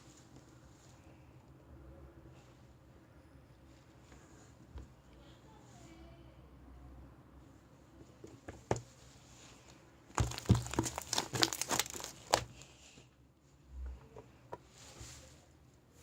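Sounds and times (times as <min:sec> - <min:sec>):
slime crackling and popping: 0:10.2 - 0:12.6.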